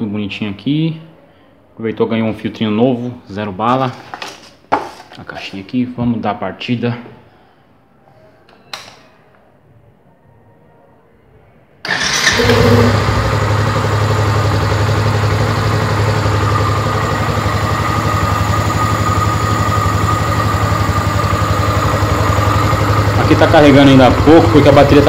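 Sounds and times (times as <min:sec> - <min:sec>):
motorcycle engine starting and idling: 0:11.8 - 0:25.0.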